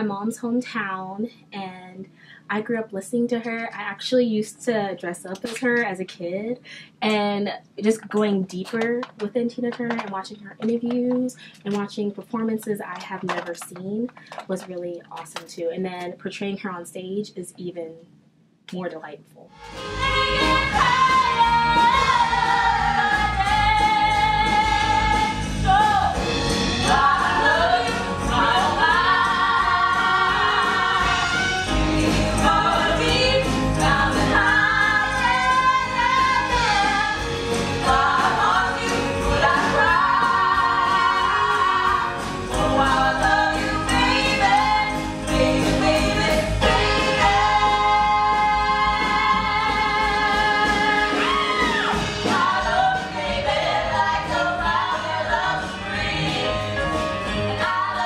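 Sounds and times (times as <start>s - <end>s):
band playing: 19.6s - 58.0s
women singing: 19.8s - 58.0s.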